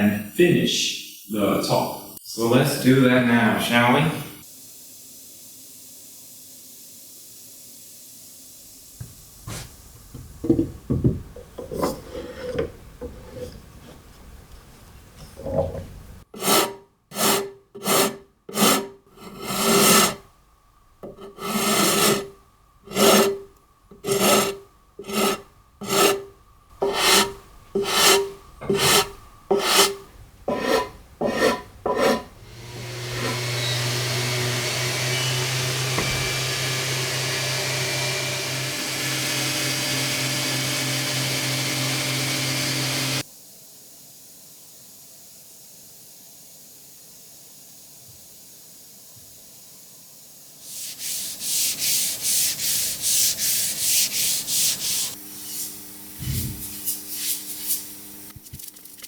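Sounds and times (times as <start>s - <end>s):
wood knocking: 9.0s - 11.7s, 35.7s - 37.2s
hand tool stroking wood: 16.4s - 20.2s, 21.0s - 43.2s, 50.7s - 55.2s
electric power tool running: 32.4s - 43.2s.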